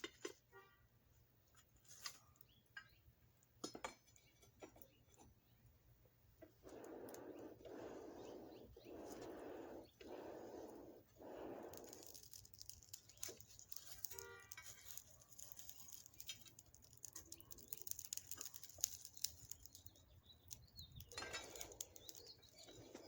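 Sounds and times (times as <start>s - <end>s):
forge fire crackling: 6.4s - 23.0s
bellows air rush: 6.6s - 12.2s.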